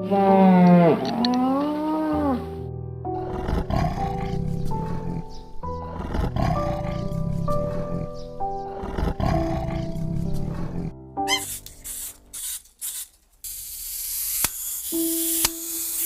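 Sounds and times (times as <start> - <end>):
background music: 0.0 - 12.4, 14.6 - 16.0
lion roaring: 3.1 - 11.0
hissing noise: 11.3 - 16.0.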